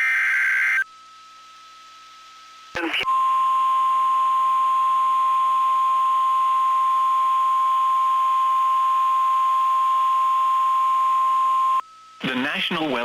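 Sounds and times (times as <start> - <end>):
faint radio hiss: 0.0 - 13.0
steady alarm tone: 3.0 - 12.1.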